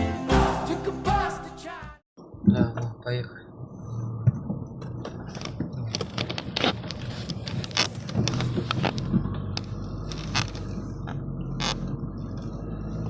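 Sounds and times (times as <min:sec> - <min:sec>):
car engine humming: 0:03.6 - 0:13.0.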